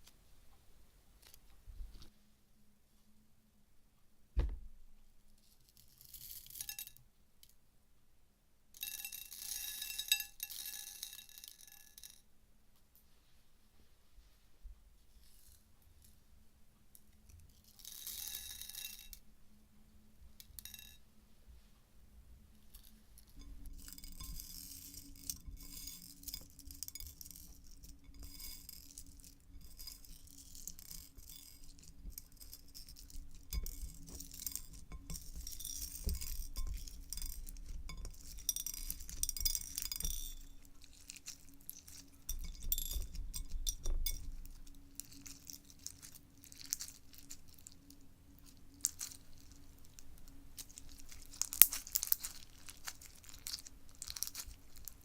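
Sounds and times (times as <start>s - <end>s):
slime crackling and popping: 50.6s - 54.9s.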